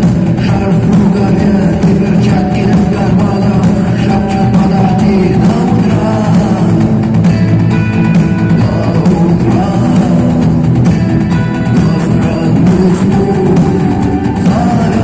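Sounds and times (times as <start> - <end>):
person singing: 0.0 - 15.0
rock band playing live: 0.0 - 15.0.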